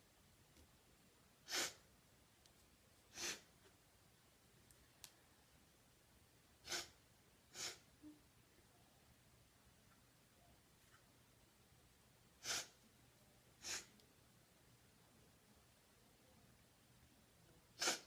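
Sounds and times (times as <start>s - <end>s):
woman sneezing: 17.8s - 18.0s.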